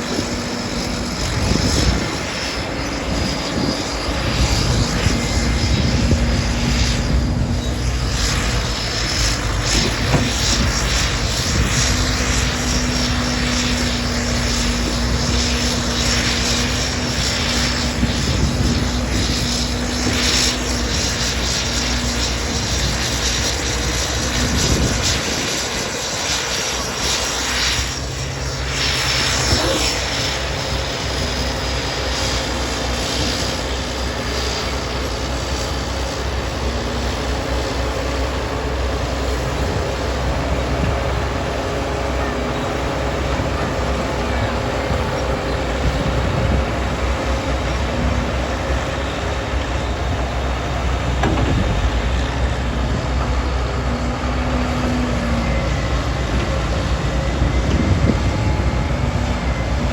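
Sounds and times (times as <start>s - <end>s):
thin high whine: 0.0s - 36.6s
tractor diesel engine running: 0.0s - 59.9s.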